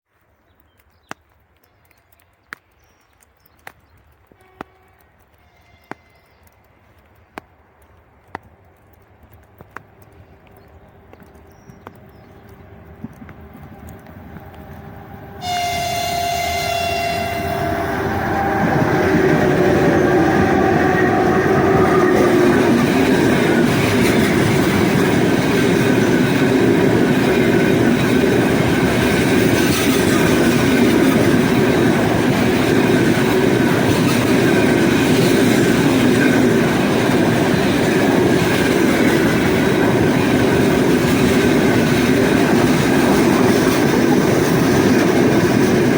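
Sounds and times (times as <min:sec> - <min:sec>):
train horn chord: 0:04.4 - 0:06.2, 0:14.4 - 0:22.9
freight train rumbling: 0:09.2 - 0:45.9
locomotive hum: 0:09.4 - 0:45.9.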